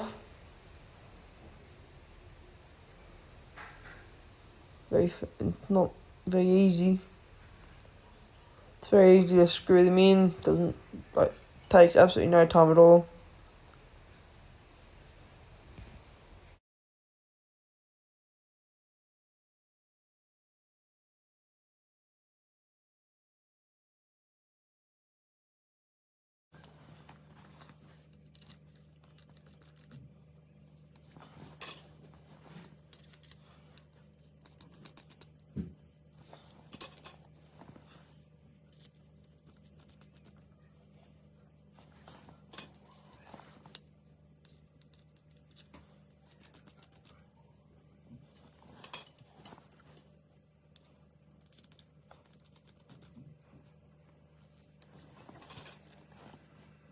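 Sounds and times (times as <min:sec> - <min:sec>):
steady low hum: 0:00.0 - 0:16.6, 0:26.6 - 0:56.9
metallic clicks of arrows handled: 0:31.6 - 0:32.0, 0:32.9 - 0:33.9, 0:36.7 - 0:37.2, 0:55.3 - 0:55.9.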